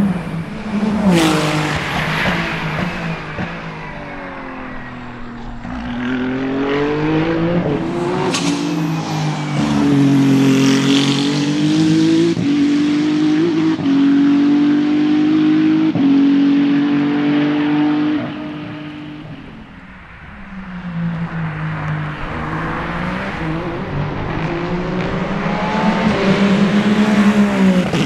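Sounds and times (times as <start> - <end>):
race car engine at high revs: 0.0 - 28.0.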